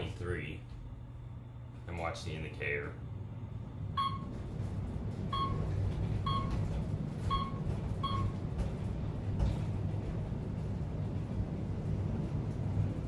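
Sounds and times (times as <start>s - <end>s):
elevator ride hum: 0.0s - 13.0s.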